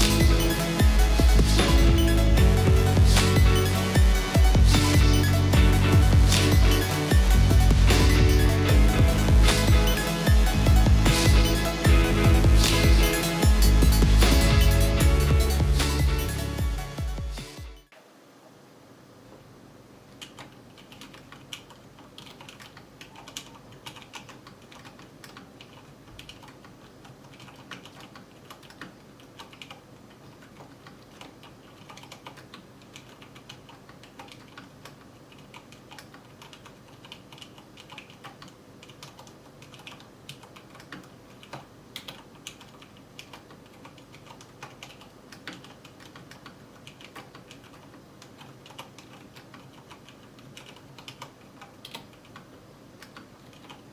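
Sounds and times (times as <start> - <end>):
mechanical keyboard typing: 20.2 - 53.9.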